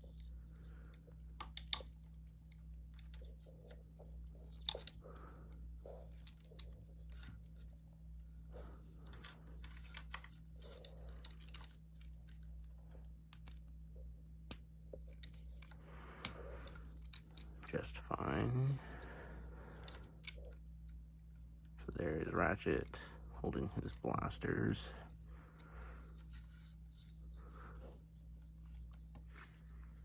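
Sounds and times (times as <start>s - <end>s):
steady low hum: 0.0s - 30.0s
plastic toy parts clicking: 0.1s - 3.5s, 4.4s - 5.0s, 9.0s - 13.7s, 14.4s - 17.5s, 19.8s - 20.6s.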